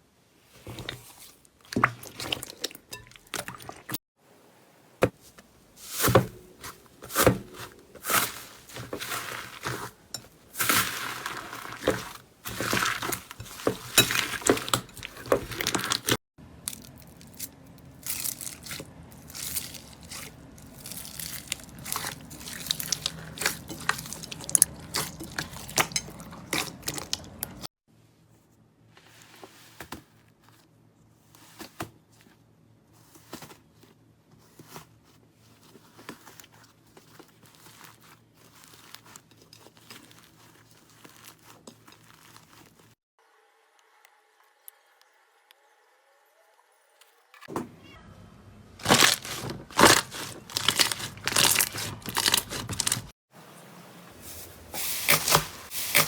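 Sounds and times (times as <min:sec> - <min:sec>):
slime crackling and popping: 0:48.8 - 0:53.1.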